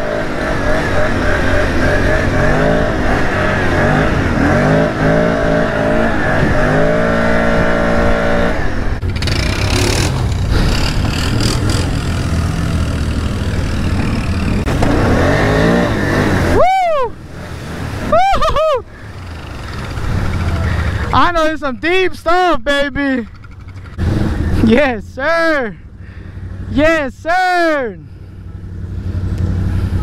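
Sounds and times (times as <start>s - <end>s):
engine revving: 0.0s - 16.7s, 23.2s - 24.7s.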